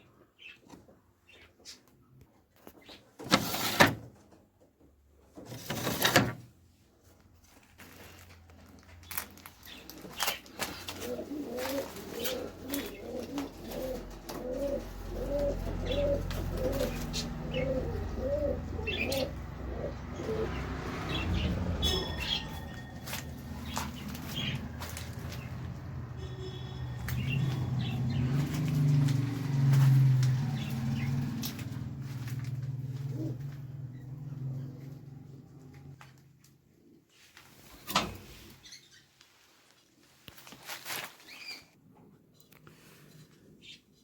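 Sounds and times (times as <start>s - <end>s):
pigeons cooing: 9.8s - 35.8s.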